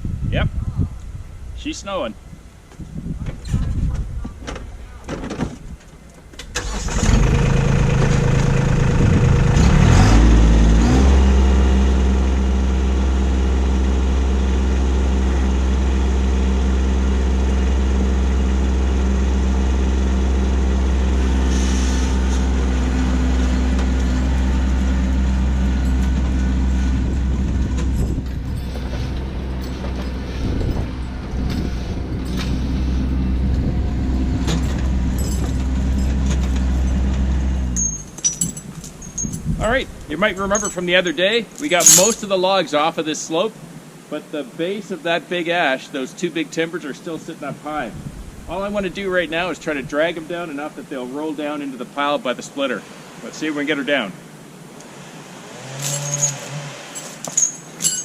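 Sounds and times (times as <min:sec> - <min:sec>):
tractor diesel engine starting: 0:06.3 - 0:38.2.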